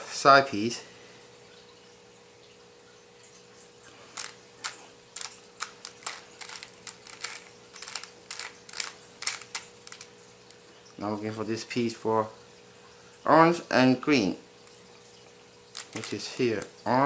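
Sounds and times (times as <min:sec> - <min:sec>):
faint steady hum: 0:00.0 - 0:17.0
puzzle cube clicking: 0:04.2 - 0:10.2, 0:15.8 - 0:16.7.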